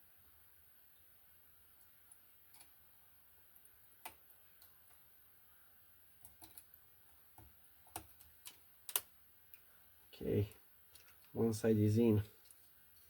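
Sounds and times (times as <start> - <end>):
small clicks and taps: 6.2 - 9.7, 10.9 - 11.4.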